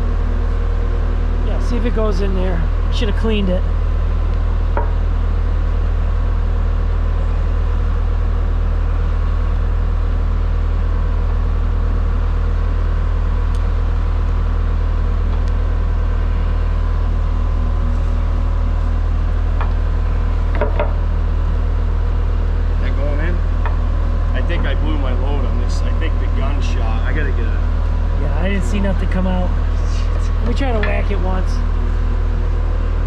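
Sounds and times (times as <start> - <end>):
diesel engine idling: 0.0 - 33.0.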